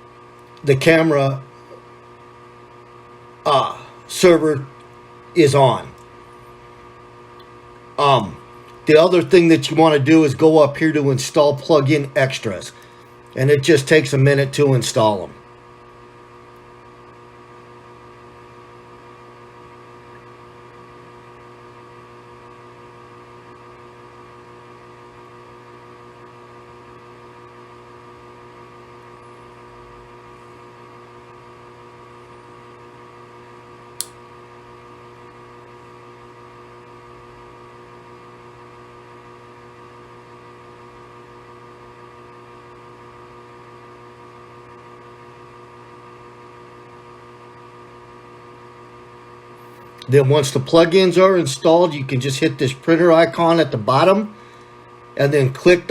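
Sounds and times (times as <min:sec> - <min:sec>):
sharp click: 0:34.0 - 0:34.2.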